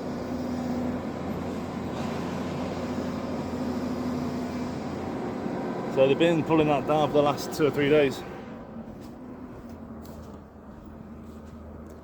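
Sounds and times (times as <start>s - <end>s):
mechanical hum with low drone: 0.0s - 12.0s.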